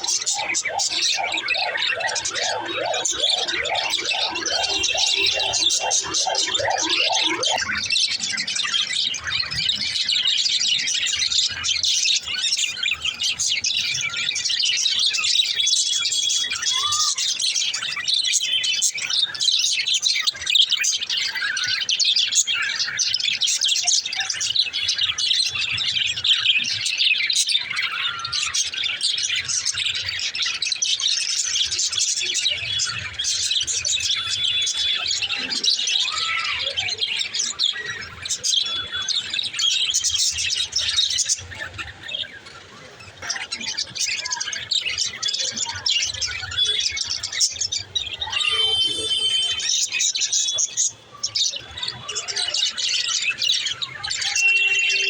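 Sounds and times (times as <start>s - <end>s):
parrots chirping and chattering: 0.0s - 55.0s
parrot squawks: 48.1s - 50.6s.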